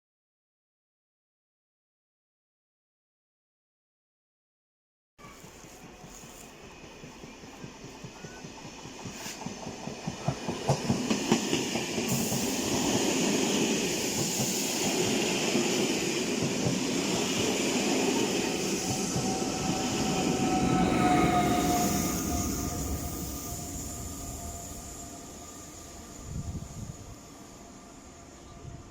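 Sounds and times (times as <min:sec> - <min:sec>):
train rumbling past: 0:05.2 - 0:28.9
train wheels clicking over rail joints: 0:05.4 - 0:20.4
thin high tone: 0:18.0 - 0:28.9.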